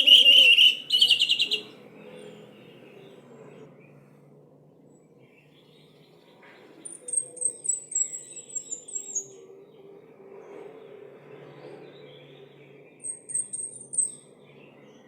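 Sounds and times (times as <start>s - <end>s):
soft bird twittering: 0.0s - 4.1s, 5.3s - 9.9s, 11.8s - 15.0s.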